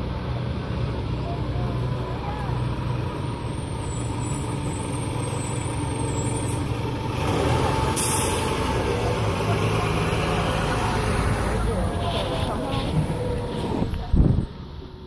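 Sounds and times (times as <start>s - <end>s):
bus engine rumbling: 0.0s - 15.0s.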